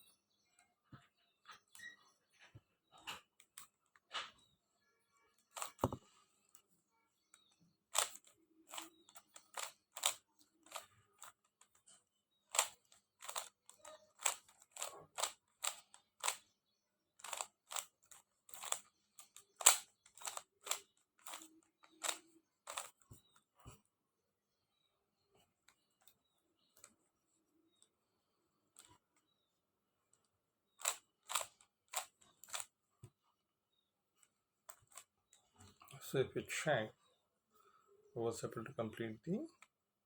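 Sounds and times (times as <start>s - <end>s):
puzzle cube layers clicking: 5.5s - 5.9s, 7.9s - 11.4s, 12.5s - 16.5s, 17.2s - 23.0s, 30.8s - 32.7s.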